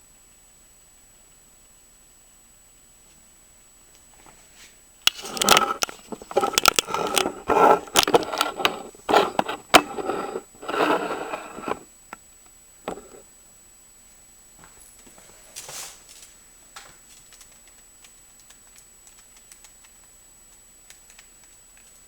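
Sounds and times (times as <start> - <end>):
rubik's cube clicking: 5.1 - 11.8.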